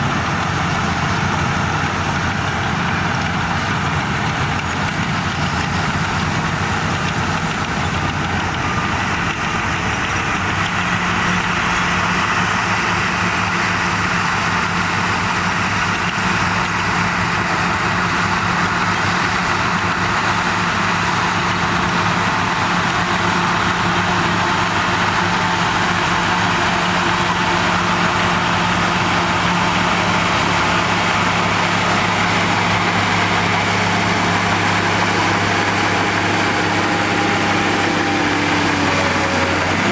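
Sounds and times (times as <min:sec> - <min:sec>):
bulldozer diesel engine running: 0:00.0 - 0:39.9.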